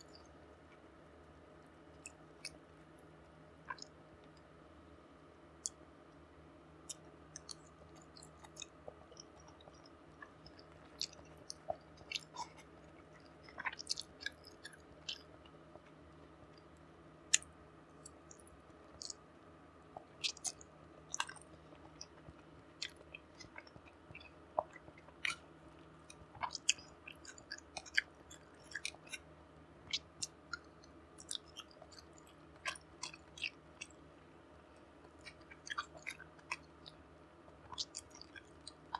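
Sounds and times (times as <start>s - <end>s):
faint steady hum: 0.0s - 38.9s
chewing and mouth sounds: 1.9s - 4.5s, 6.8s - 19.3s, 20.0s - 34.1s, 34.8s - 38.9s
sharp wet clicks: 2.0s - 2.6s, 6.9s - 15.9s, 17.3s - 19.2s, 20.0s - 34.0s, 35.0s - 38.9s.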